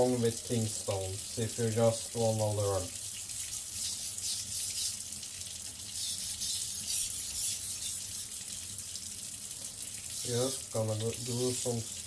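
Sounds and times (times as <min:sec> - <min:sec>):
knife rasping on whetstone: 0:03.0 - 0:05.0, 0:05.9 - 0:08.7.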